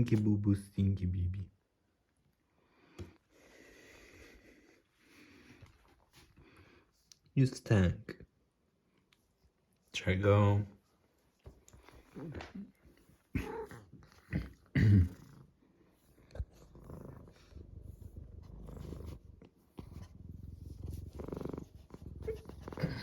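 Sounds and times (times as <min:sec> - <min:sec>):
cat purring: 0:11.8 - 0:23.0.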